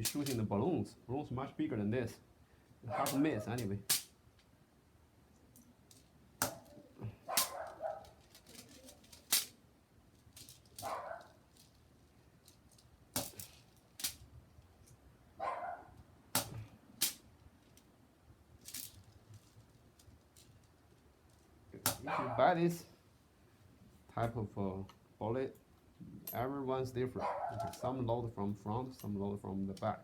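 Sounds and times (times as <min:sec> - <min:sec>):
dog barking: 0:02.9 - 0:03.4, 0:07.2 - 0:08.2, 0:10.8 - 0:11.4, 0:15.4 - 0:16.0, 0:22.0 - 0:22.5, 0:27.2 - 0:27.7.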